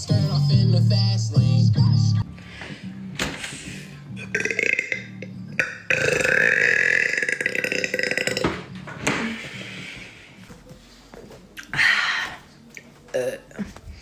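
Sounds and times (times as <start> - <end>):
woman burping: 4.2 - 8.6, 13.1 - 13.7.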